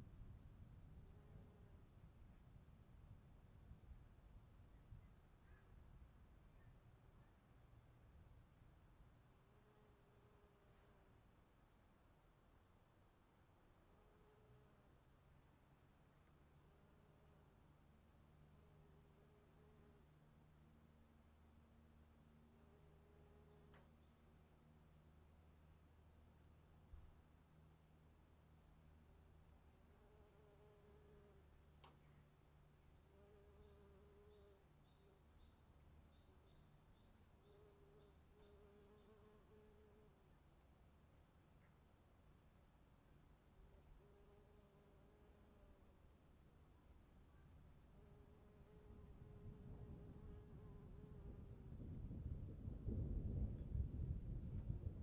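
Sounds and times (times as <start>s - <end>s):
crickets trilling: 17.0s - 55.0s
thunder rumbling: 51.6s - 55.0s.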